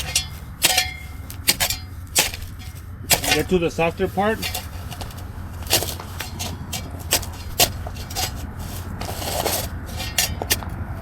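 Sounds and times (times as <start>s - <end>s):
shovel hitting hard ground: 0.0s - 10.8s
shovel scraping through soil: 0.0s - 11.0s.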